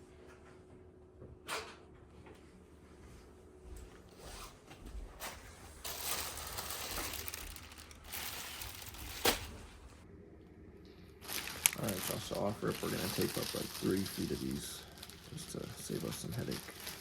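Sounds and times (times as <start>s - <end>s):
plastic crinkling and rustling: 5.2s - 10.0s, 11.2s - 17.0s.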